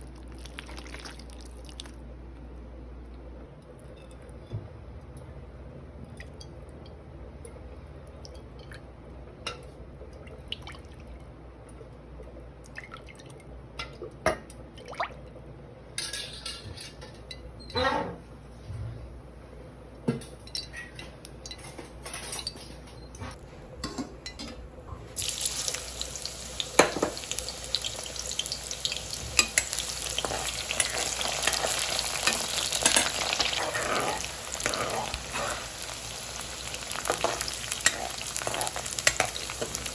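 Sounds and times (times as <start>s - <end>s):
food frying sizzle: 25.1s - 39.9s
utensil scraping cooking pan: 25.2s - 39.9s.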